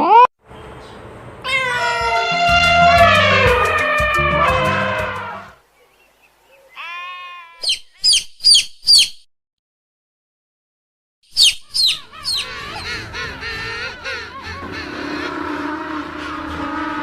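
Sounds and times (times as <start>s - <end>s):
animal bleat-like call: 1.5s - 5.5s, 6.8s - 7.6s
long wavering animal call: 1.5s - 5.6s, 12.1s - 17.0s.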